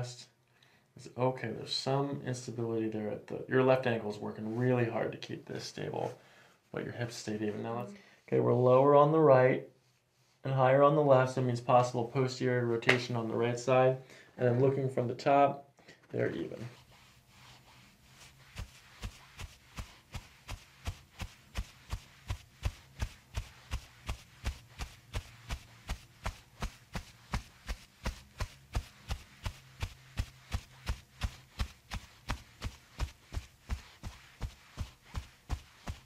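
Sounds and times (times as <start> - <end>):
steady rhythmic tapping: 18.0 - 36.0.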